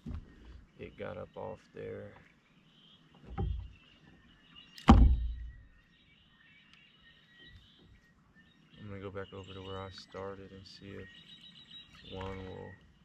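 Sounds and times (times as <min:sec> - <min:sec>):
knocks against plastic kayak: 0:04.9 - 0:05.5.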